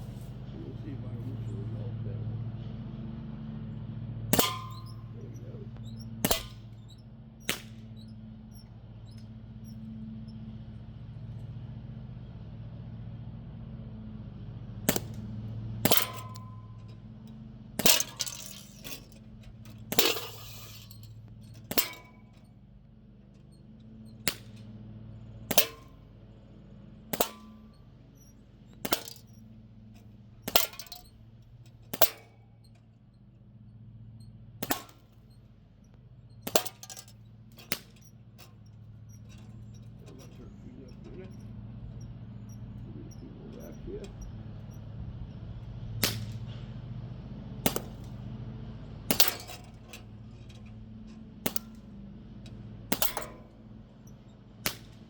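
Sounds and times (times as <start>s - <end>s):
steady low hum: 0.0s - 55.0s
air gun shots: 4.3s - 5.0s, 6.2s - 6.8s, 7.5s - 7.9s, 14.9s - 15.2s, 15.8s - 16.4s, 19.9s - 20.9s, 24.2s - 24.6s, 25.5s - 25.9s, 27.1s - 27.6s, 28.8s - 29.3s, 34.6s - 35.2s, 46.0s - 46.6s, 47.6s - 48.2s, 49.1s - 49.6s, 51.4s - 51.8s, 52.9s - 53.4s, 54.6s - 55.0s
metallic ring: 4.3s - 10.4s, 15.8s - 22.7s, 23.3s - 33.3s, 36.3s - 44.8s, 49.1s - 51.9s, 52.5s - 54.2s.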